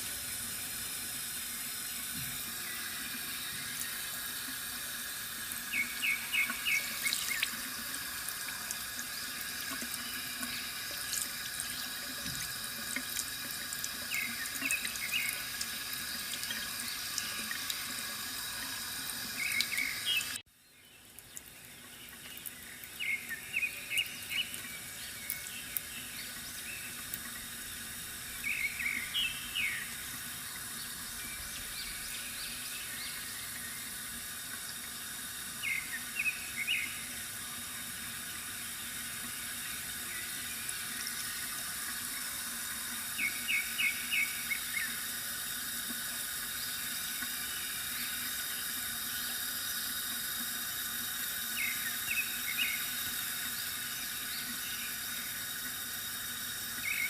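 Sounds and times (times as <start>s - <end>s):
water trickling from fountain: 0.0s - 57.0s
small birds chirping: 5.6s - 7.7s, 14.0s - 17.8s, 19.3s - 27.5s, 28.4s - 34.0s, 35.6s - 37.2s, 43.1s - 45.0s, 51.5s - 55.5s.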